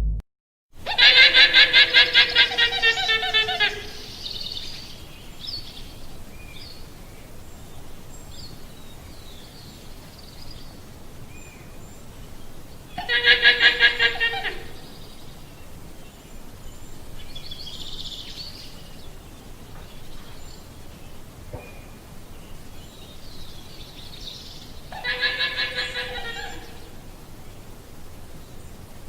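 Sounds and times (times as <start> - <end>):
steady outdoor hiss: 0.8 - 29.0
faint high calls: 12.9 - 15.2, 24.9 - 27.2
llama calling: 13.0 - 14.9, 24.9 - 27.0.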